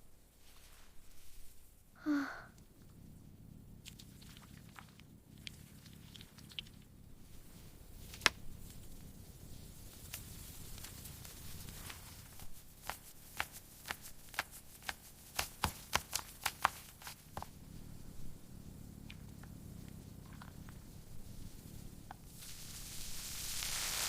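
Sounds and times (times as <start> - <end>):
low steady rumble: 0.0 - 12.7, 17.2 - 23.8
sharp irregular taps: 12.8 - 17.5.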